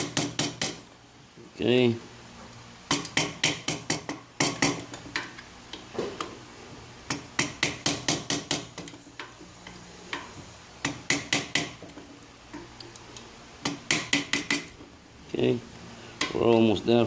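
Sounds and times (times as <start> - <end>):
hammer tapping steel chisel: 13.7 - 14.7.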